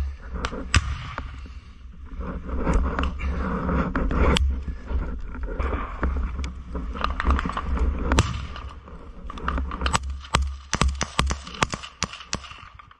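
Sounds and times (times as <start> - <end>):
microphone handling noise: 0.0 - 10.4
wind rumble: 0.0 - 12.9
gunshots: 9.8 - 12.9.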